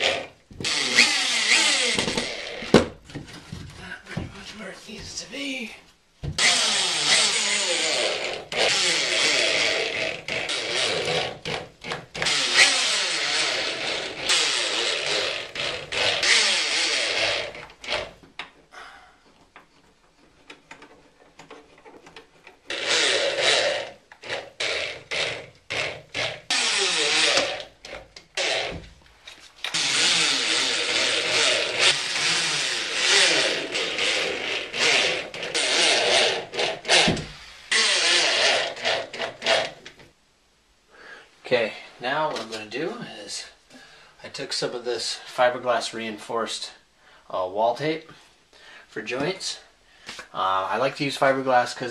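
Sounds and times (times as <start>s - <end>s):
power drill driving screws: 0.0s - 2.9s, 6.4s - 18.1s, 22.6s - 28.8s, 29.6s - 39.8s.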